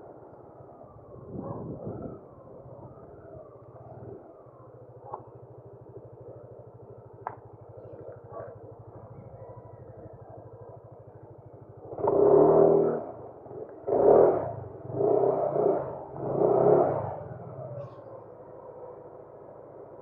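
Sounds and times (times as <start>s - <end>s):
muffled motorcycle engine running: 3.8s - 18.2s.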